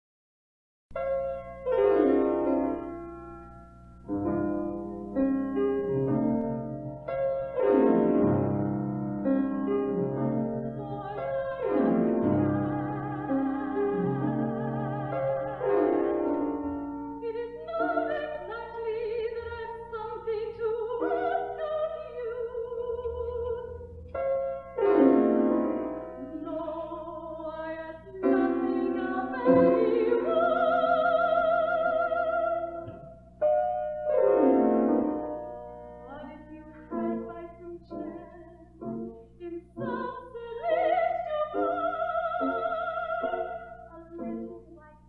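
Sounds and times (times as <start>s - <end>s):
piano accompaniment: 0.9s - 45.0s
woman singing with vibrato: 10.5s - 23.9s, 26.1s - 33.1s, 36.0s - 45.0s.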